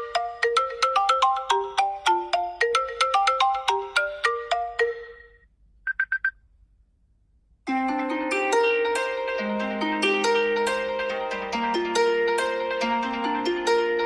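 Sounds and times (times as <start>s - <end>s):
ringtone melody: 0.0s - 6.3s, 7.7s - 14.0s
rapid high-pitched beeps: 5.9s - 6.3s.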